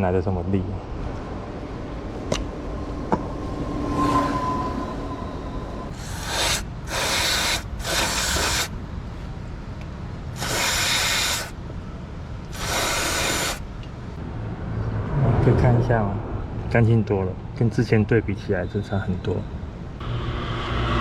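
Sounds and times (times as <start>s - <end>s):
aerosol spray hissing: 5.9s - 8.7s, 10.4s - 11.6s, 12.5s - 13.6s.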